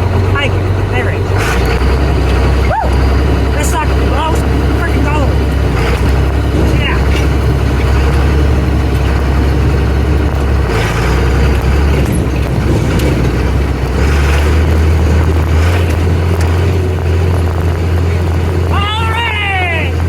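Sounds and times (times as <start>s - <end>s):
rattle: 0.0s - 18.8s
tractor engine droning under load: 0.0s - 20.0s.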